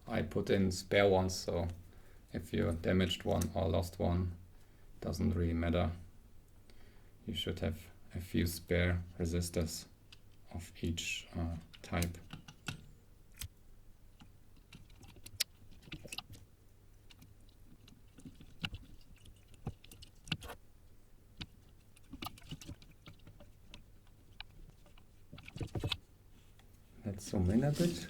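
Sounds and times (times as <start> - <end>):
small rustles: 11.5 - 28.0.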